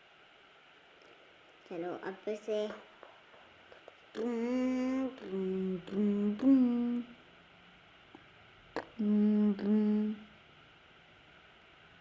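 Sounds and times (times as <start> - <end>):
person humming a tune: 4.2 - 7.2, 8.8 - 10.3.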